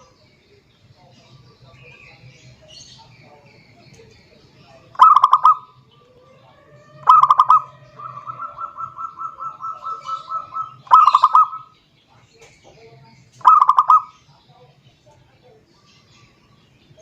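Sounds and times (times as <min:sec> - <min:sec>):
dove cooing trilled phrases: 0:04.8 - 0:11.8, 0:13.4 - 0:14.3
soft pulsed coos: 0:05.0 - 0:11.7.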